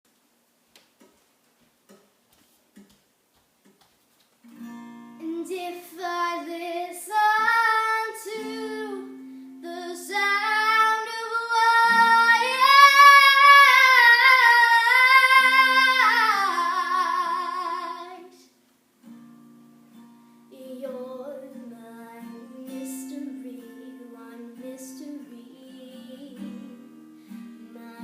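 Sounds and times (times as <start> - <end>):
plucked acoustic guitar: 4.4 - 6.8, 7.5 - 18.4, 19.0 - 28.0
woman singing: 5.2 - 18.5, 20.6 - 28.0.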